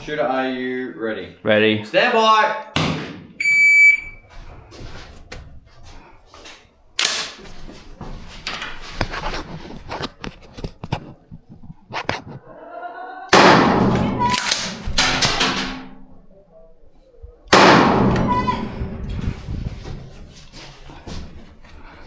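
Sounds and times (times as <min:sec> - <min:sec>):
rifle and gear rattling: 0:14.2 - 0:16.1
sharp gunshot bang: 0:17.5 - 0:18.7.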